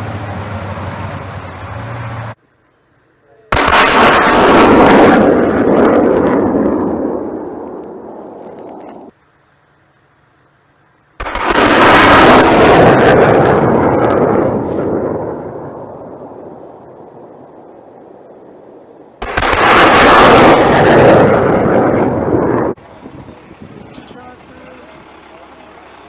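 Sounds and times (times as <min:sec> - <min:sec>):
heavy artillery blasts: 0:03.5 - 0:09.1, 0:11.2 - 0:24.2.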